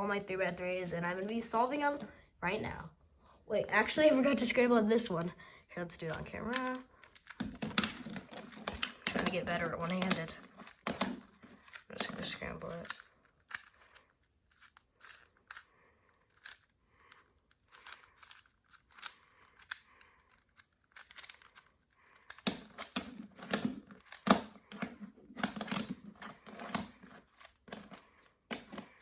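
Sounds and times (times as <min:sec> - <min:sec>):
puzzle cube clicking: 0:06.0 - 0:29.0.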